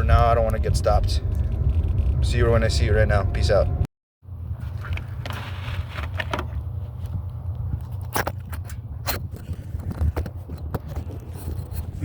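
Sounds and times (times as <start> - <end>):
car rumble from inside cabin: 0.0 - 3.9.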